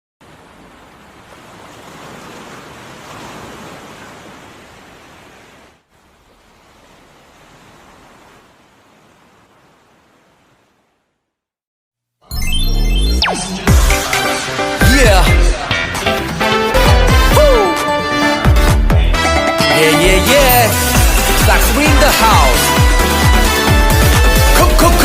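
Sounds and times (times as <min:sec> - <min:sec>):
ocean surf rushing: 0:00.2 - 0:10.8.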